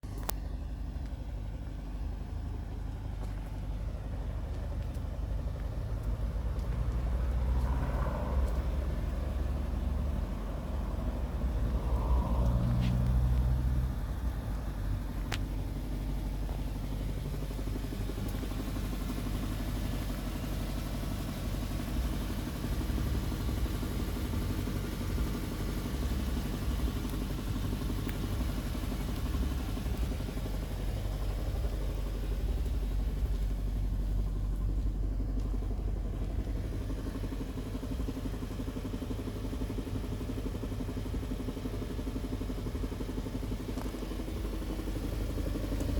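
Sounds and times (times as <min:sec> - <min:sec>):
car engine idling: 0:00.0 - 0:45.9
engine knock: 0:00.0 - 0:45.9.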